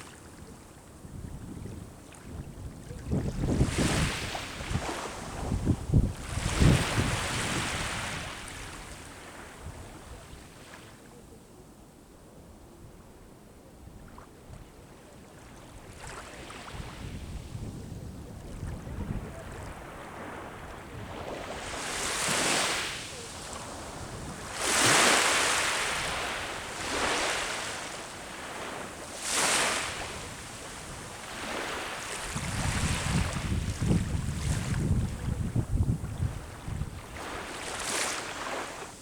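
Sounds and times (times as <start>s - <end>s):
wind rumble on microphone: 0.4s - 10.6s, 15.7s - 22.4s, 23.1s - 27.7s, 29.7s - 38.0s
sea waves breaking on shore: 3.0s - 10.9s, 15.4s - 17.6s, 18.4s - 39.0s.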